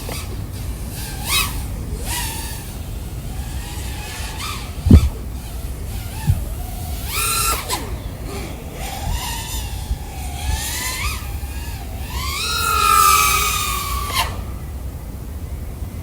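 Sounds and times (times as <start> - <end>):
drone motors whining: 0.0 - 16.0.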